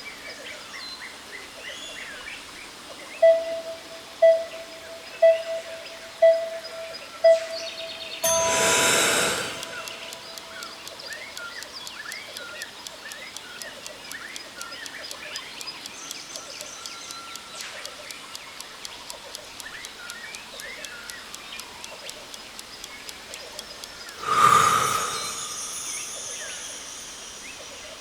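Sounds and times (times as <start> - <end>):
fast even ticking: 5.2 - 28.0
waterfall hiss: 8.4 - 10.6, 24.2 - 28.0.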